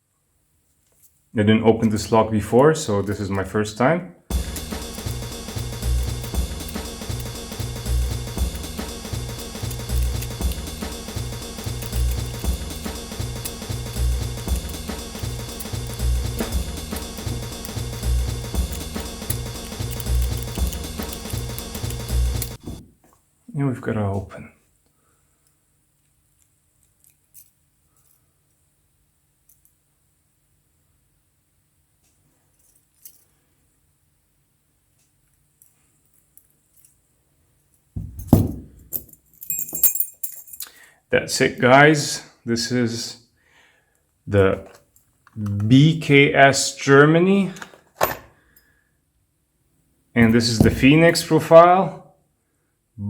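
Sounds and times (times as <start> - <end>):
background music with drum beat: 4.3 - 22.8, 50.2 - 51.1
knock and clatter: 38.0 - 38.7, 50.2 - 50.9.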